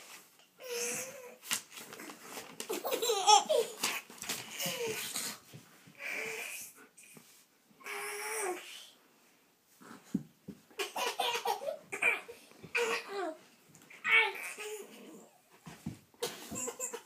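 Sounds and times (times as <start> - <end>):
baby laughing: 2.7 - 5.1, 10.8 - 13.4, 16.2 - 17.0.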